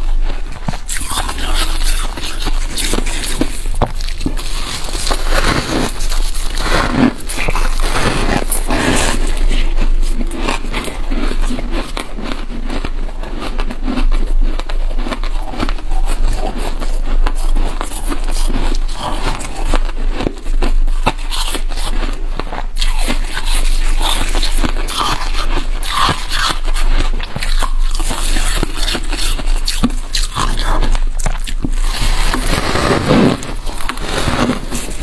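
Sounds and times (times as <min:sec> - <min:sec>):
frost being chewed crunching: 0:00.0 - 0:35.0.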